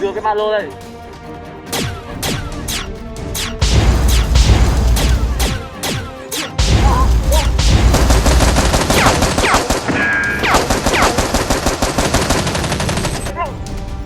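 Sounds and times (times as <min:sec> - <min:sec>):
music with heavy bass beat: 0:03.6 - 0:05.7
rapid automatic gunfire: 0:06.6 - 0:13.4.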